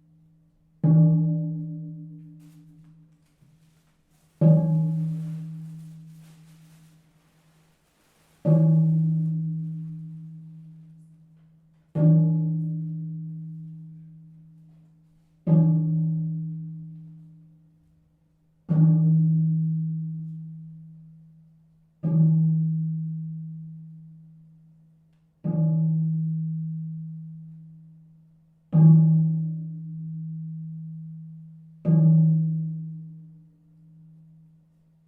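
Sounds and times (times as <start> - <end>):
deep percussion strokes: 2.4 - 11.4.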